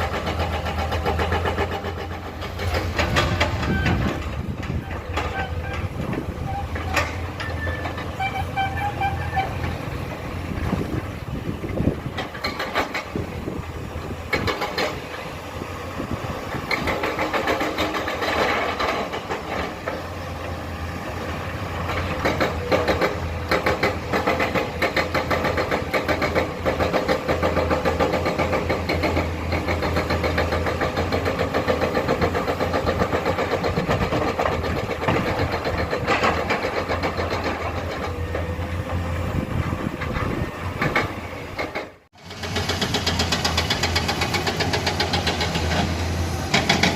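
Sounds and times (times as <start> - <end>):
excavator diesel engine running: 0.0 - 46.9.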